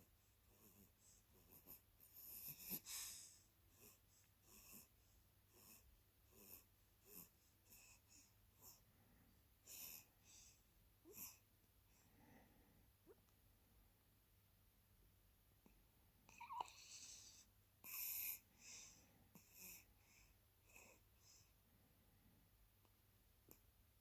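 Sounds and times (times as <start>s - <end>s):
faint wheezy snoring: 0.0s - 12.8s, 16.3s - 21.5s.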